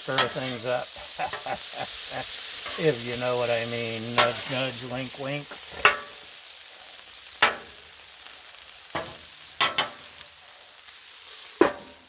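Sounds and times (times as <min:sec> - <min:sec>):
metal spatula scraping griddle: 0:00.0 - 0:06.4, 0:07.3 - 0:07.8, 0:08.8 - 0:10.3, 0:11.4 - 0:12.0
chicken sizzling on a griddle: 0:00.0 - 0:12.0.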